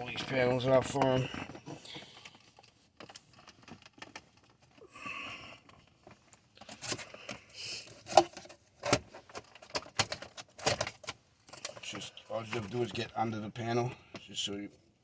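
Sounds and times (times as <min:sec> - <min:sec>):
breathy rustle: 0:04.8 - 0:06.0.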